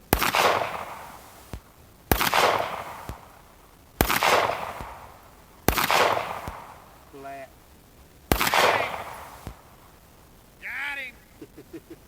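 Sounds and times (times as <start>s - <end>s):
pistol shots with echo: 0.0s - 7.0s, 8.3s - 9.9s.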